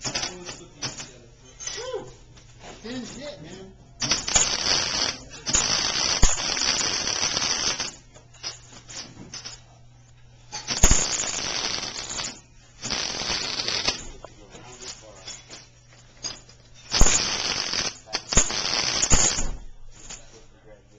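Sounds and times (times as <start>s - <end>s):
welding crackling and hissing: 4.0s - 9.5s, 10.5s - 19.6s.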